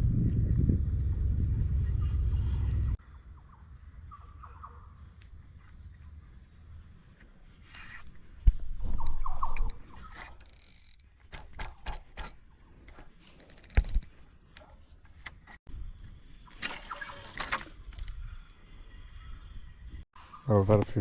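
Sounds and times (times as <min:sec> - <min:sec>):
low rumble: 0:00.0 - 0:03.0
high drone of insects: 0:00.0 - 0:09.7, 0:20.2 - 0:21.0.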